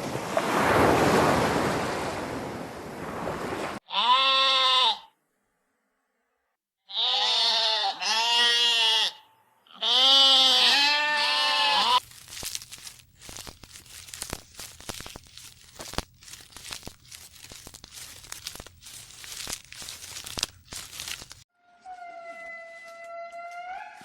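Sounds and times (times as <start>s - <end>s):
goat-like bleat: 3.8s - 5.1s, 6.9s - 12.0s
crackling and crunching: 11.7s - 21.5s.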